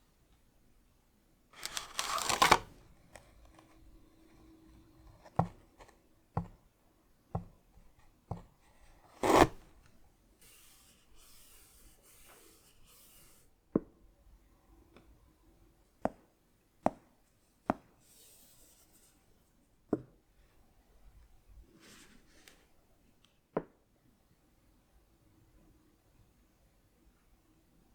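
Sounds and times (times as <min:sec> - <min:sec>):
fingers rubbing packaging: 0:01.6 - 0:03.8.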